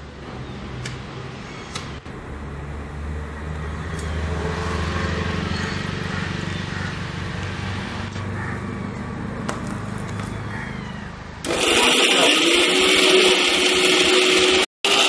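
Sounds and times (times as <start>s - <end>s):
mixer grinder motor whining: 11.4s - 15.0s.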